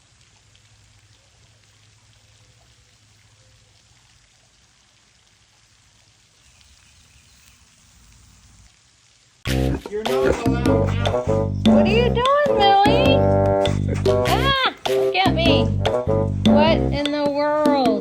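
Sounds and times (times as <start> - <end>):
even hiss: 6.0 - 18.0.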